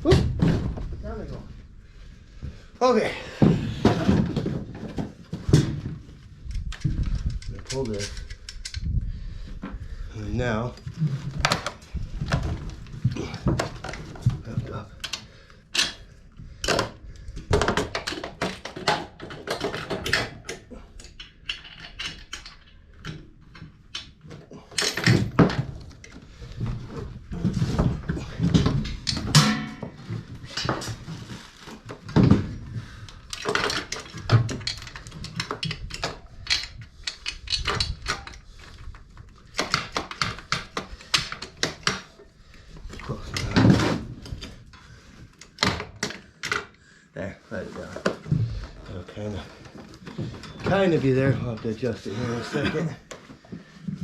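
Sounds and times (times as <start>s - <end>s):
metallic clunks and rattles: 27.8s - 31.0s
tools clattering: 28.4s - 31.0s.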